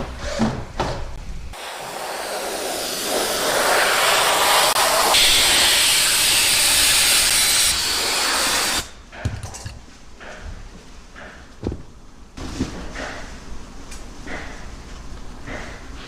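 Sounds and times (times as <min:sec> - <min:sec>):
compressed air hissing: 0:01.5 - 0:08.9.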